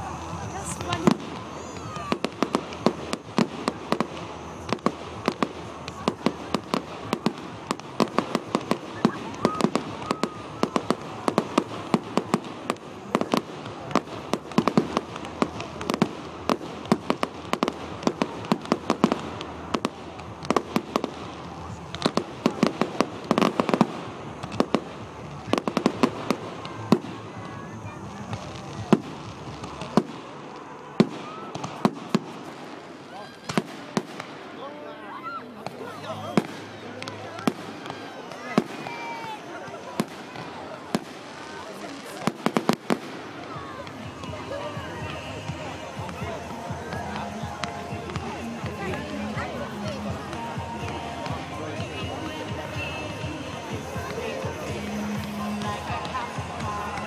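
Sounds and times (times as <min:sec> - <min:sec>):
fireworks bangs and crackles: 0:00.0 - 0:57.0.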